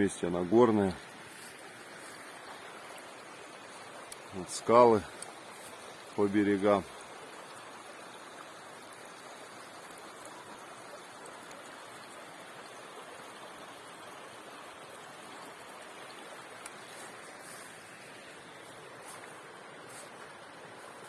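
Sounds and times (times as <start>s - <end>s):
river rushing over stones: 14.3s - 21.0s.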